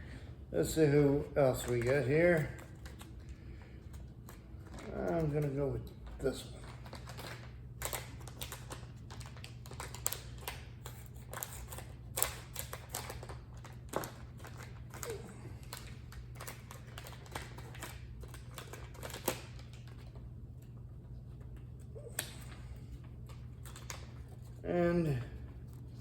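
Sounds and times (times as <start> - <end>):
plastic packaging crinkling and tearing: 1.2 - 3.3, 3.9 - 20.2.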